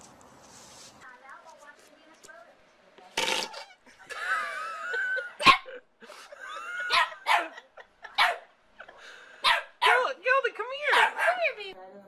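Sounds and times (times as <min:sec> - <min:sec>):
dog barking: 0:05.4 - 0:05.8, 0:06.9 - 0:07.6, 0:08.2 - 0:08.5, 0:09.4 - 0:10.2, 0:10.9 - 0:11.6.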